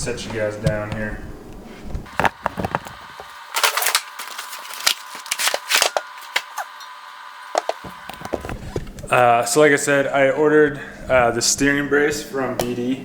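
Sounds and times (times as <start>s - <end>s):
cardboard package being opened: 2.1s - 6.8s.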